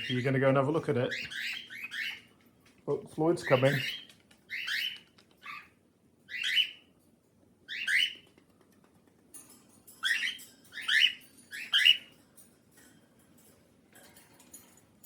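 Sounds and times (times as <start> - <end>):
cockatiel chirping: 1.1 - 2.3, 3.4 - 6.8, 7.7 - 8.3.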